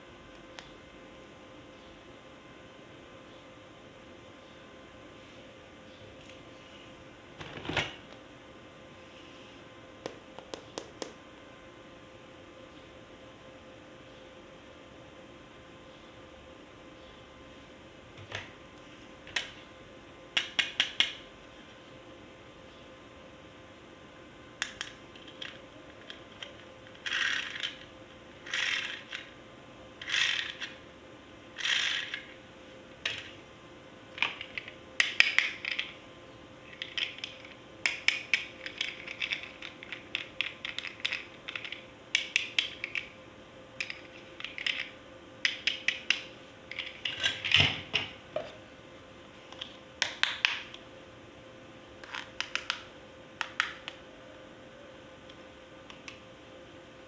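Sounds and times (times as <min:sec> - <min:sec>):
plastic parts clicking and rattling: 0:25.2 - 0:27.9, 0:36.7 - 0:43.1, 0:43.8 - 0:44.9.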